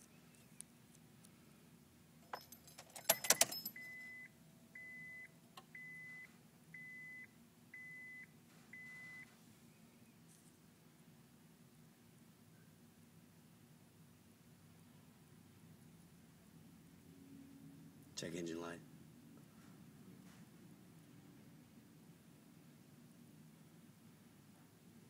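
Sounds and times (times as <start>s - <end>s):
car keys jangling: 2.2s - 4.0s
car warning chime beeping: 3.1s - 9.3s.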